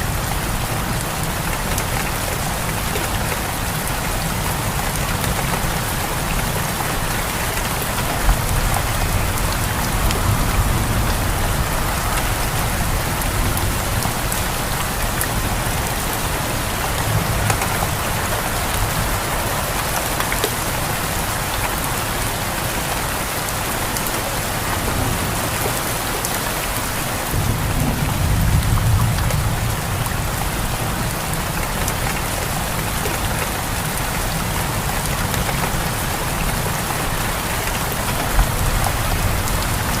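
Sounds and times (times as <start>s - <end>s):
heavy rain pattering: 0.0s - 40.0s
distant thunder rumbles: 7.8s - 19.2s.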